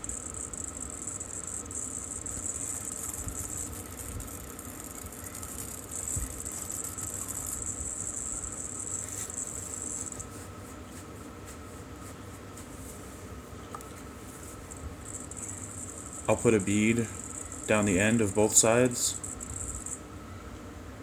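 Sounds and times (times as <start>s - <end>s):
arc welding crackling hiss: 0.0s - 10.5s, 14.5s - 20.0s.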